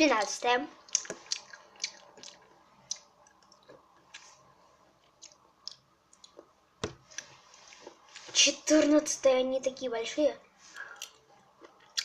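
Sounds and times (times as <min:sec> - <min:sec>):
wet mouth clicks chewing: 0:00.9 - 0:04.3, 0:05.1 - 0:06.4.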